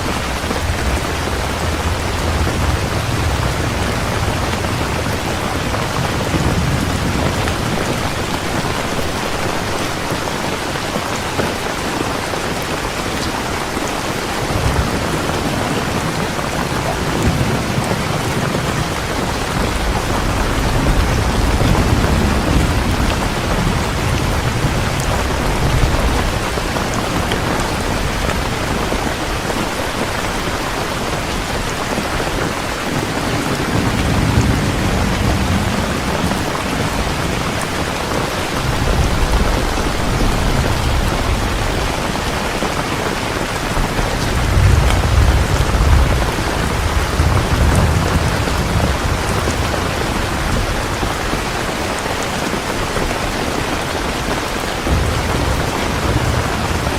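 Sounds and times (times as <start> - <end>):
low rolling thunder: 0.0 - 56.9
steady rain pouring: 0.0 - 56.9.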